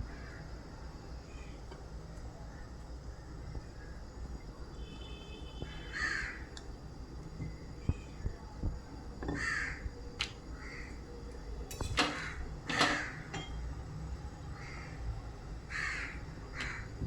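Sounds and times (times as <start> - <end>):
crows cawing: 0.1 - 0.4, 5.8 - 6.5, 9.3 - 9.8, 10.5 - 11.0, 12.0 - 13.3, 14.5 - 15.0, 15.7 - 17.0.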